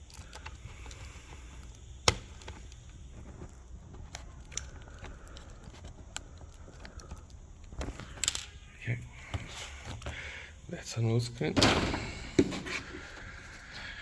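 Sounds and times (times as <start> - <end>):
connector clicks: 0.0 - 8.6
quiet handling noise: 0.0 - 14.0.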